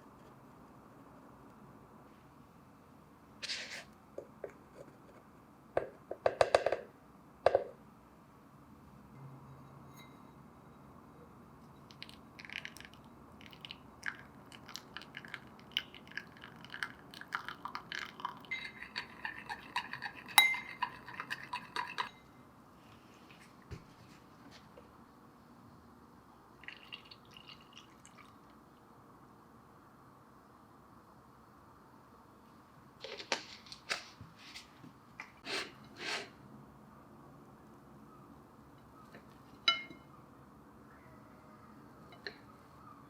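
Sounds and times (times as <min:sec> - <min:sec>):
crockery and cutlery clinking: 0:18.3 - 0:22.1, 0:39.6 - 0:40.1.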